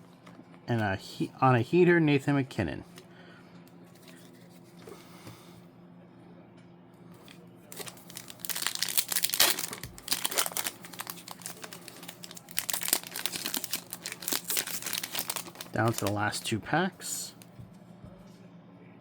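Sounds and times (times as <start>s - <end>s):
faint steady hum: 0.0s - 19.0s
wrapper crinkling and tearing: 7.7s - 17.5s.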